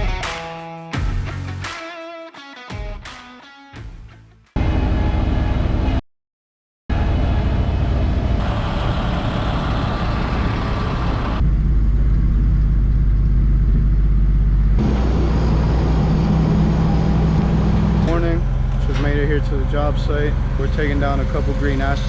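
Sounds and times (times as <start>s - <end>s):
vehicle engine and road noise: 6.9s - 22.0s.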